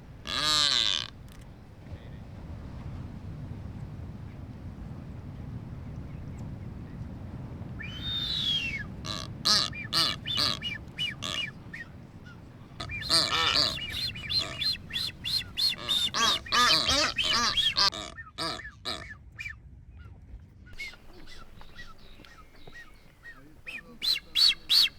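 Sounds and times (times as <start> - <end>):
birds whistling and honking: 7.8 - 17.9, 20.8 - 24.9
long falling whistle: 7.9 - 8.8.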